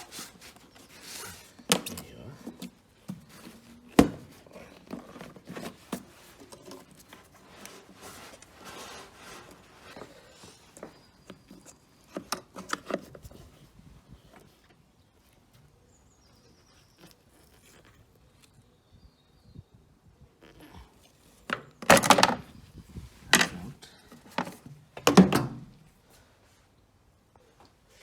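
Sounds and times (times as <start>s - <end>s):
loud plastic clatters and scrapes: 21.5s - 22.5s.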